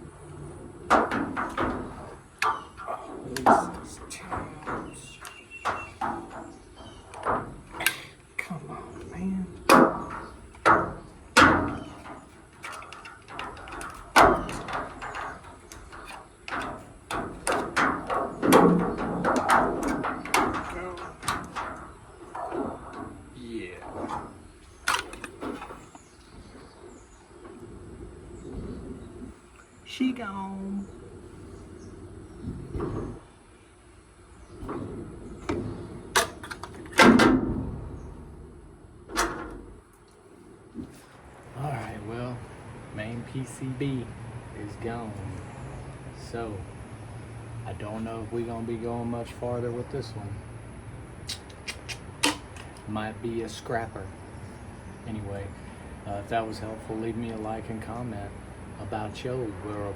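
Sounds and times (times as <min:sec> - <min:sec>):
dryer parts knocking and clunking: 0:00.0 - 0:30.5, 0:31.2 - 0:59.9
tools knocking and clicking: 0:00.9 - 0:08.3, 0:09.7 - 0:23.2, 0:23.9 - 0:26.0, 0:36.2 - 0:37.4, 0:51.5 - 0:52.8.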